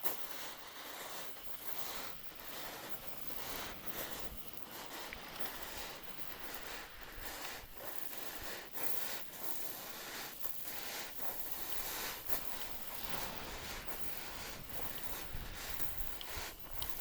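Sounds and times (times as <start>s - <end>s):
ocean waves washing on shore: 9.9s - 17.0s.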